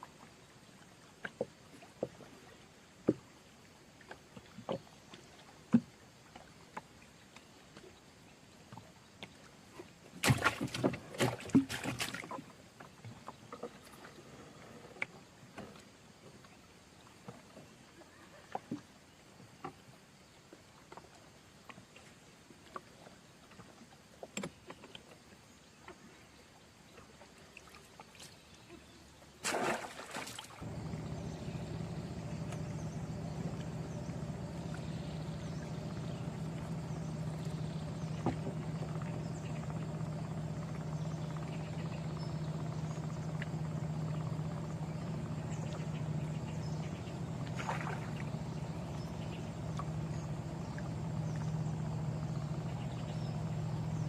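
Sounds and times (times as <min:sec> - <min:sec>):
small engine running: 0:30.5 - 0:54.0.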